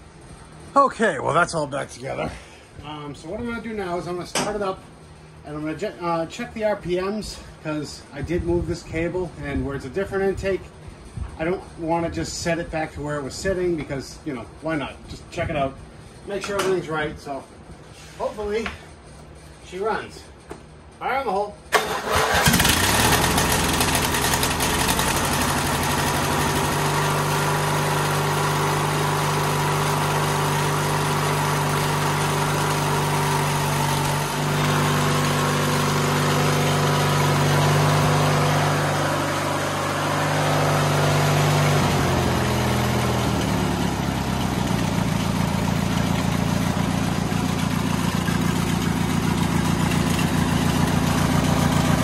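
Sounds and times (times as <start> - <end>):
riding mower engine running: 21.7 - 52.0.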